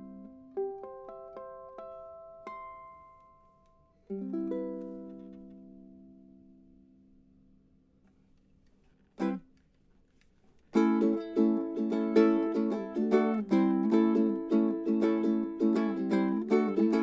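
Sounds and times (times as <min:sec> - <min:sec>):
ukulele strumming: 0:00.0 - 0:07.4, 0:09.2 - 0:09.7, 0:10.7 - 0:17.0.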